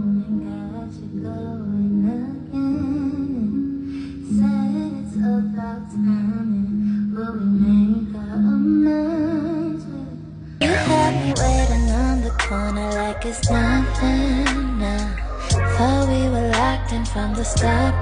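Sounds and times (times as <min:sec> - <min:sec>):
woman singing slow melody: 0:00.0 - 0:18.0.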